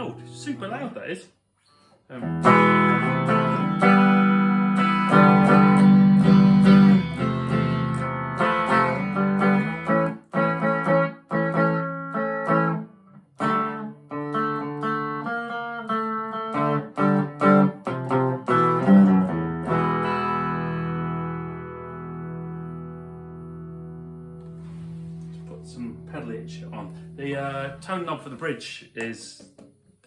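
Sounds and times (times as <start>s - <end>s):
clean electric guitar chords: 0.0s - 0.6s, 2.2s - 28.1s
picked guitar notes: 0.0s - 1.1s, 1.7s - 29.1s.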